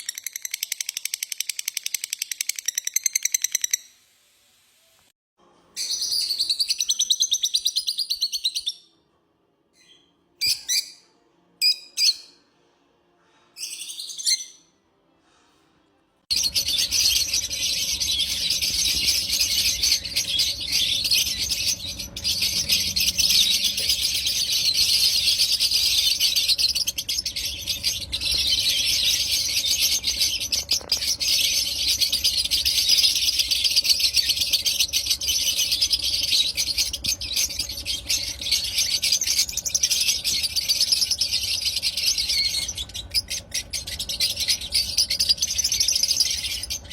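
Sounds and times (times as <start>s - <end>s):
birds chirping and chattering: 16.3s - 46.9s.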